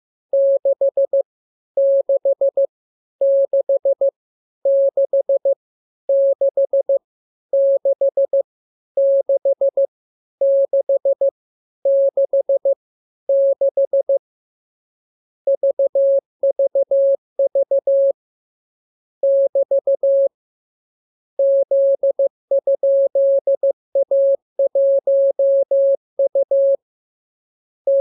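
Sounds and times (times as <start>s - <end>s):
morse code tone: 21.4s - 26.8s.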